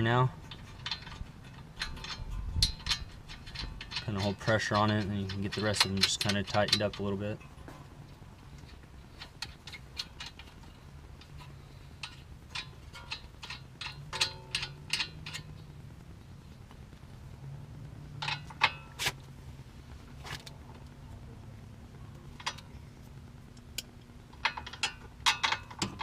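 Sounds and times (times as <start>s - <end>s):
metal tools and bolts clinking: 0.0s - 15.7s, 18.2s - 19.2s, 22.1s - 22.9s, 23.5s - 26.0s
steady low hum: 0.0s - 26.0s.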